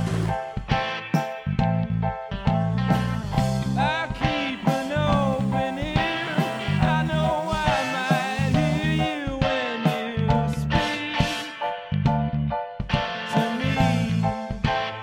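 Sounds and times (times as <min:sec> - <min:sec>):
rock music with bass and guitar: 0:00.0 - 0:15.0
lead melody line: 0:03.8 - 0:09.4.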